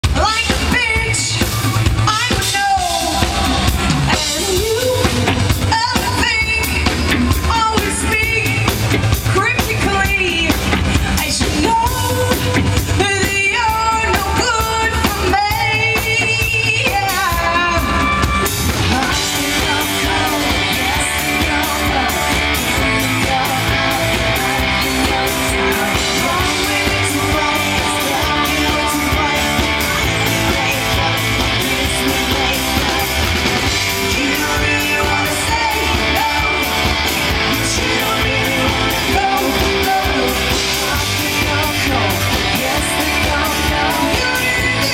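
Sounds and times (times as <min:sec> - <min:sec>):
pop-rock band playing: 0:00.0 - 0:44.9
woman singing lead vocal: 0:00.0 - 0:44.9.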